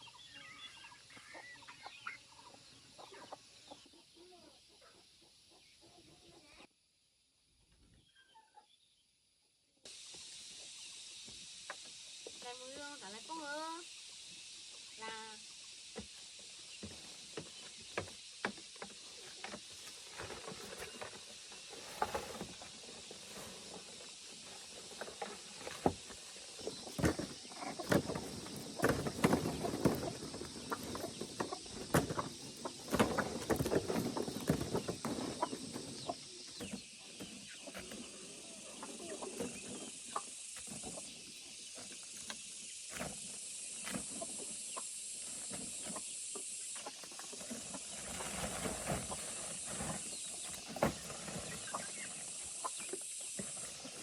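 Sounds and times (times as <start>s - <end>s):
rain hiss: 9.9s - 17.3s.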